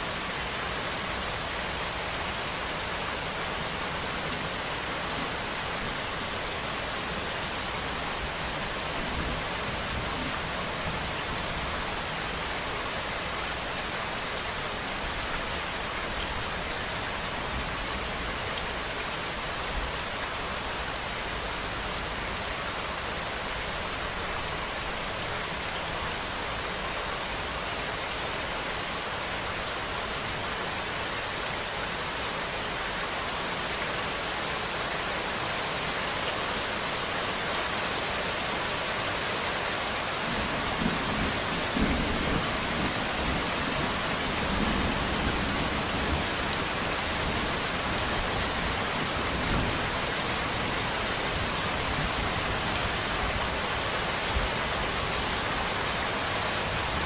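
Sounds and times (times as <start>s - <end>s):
heavy rainfall: 0.0s - 57.0s.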